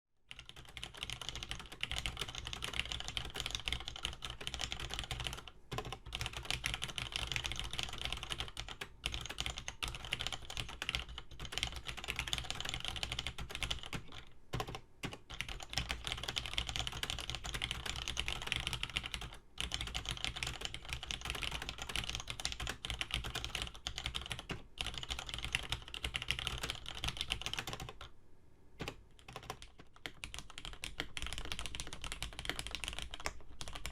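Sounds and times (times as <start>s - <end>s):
fast typing on mechanical keyboard: 0.3s - 28.1s, 28.8s - 33.9s.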